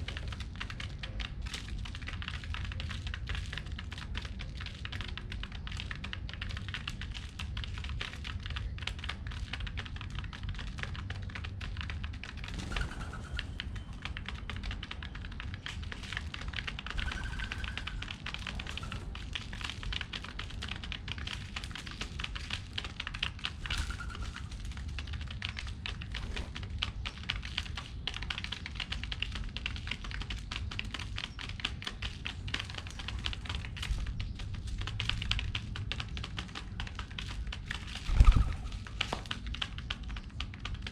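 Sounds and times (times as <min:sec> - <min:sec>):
pigeons pecking seeds: 0:00.0 - 0:40.9
faint bird chirps: 0:23.6 - 0:24.5.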